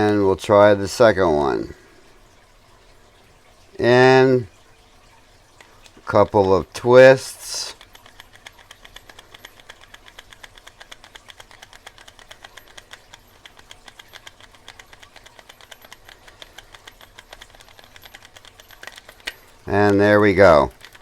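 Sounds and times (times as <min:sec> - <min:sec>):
lock pick clicking in lock: 0:07.8 - 0:21.0.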